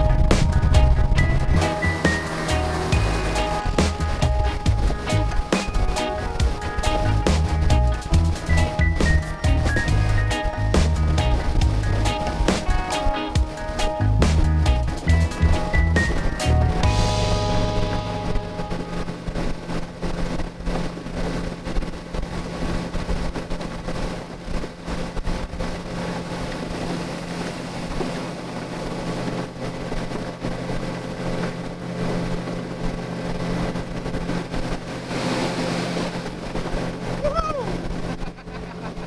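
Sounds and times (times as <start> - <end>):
motorboat engine running: 0.0 - 39.0
water rushing: 0.0 - 39.0.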